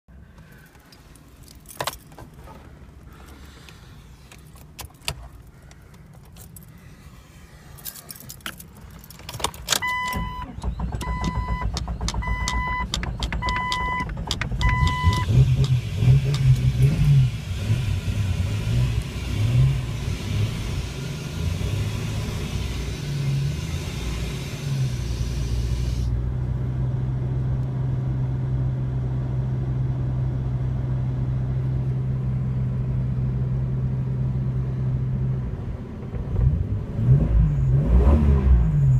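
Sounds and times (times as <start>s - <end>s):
car engine idling: 0.1s - 26.6s
keys jangling: 0.9s - 2.3s, 6.1s - 6.8s, 7.7s - 9.8s
engine cranking: 7.8s - 17.2s
car warning chime: 9.8s - 15.3s.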